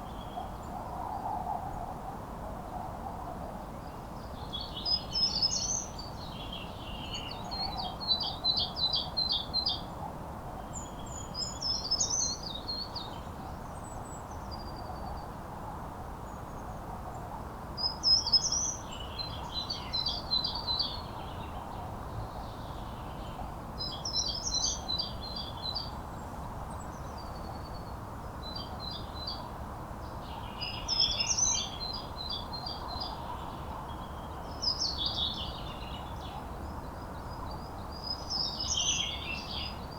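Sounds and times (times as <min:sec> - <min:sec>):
steady low background noise: 0:00.0 - 0:39.9
songbird singing with trill: 0:22.5 - 0:26.0, 0:30.2 - 0:39.9.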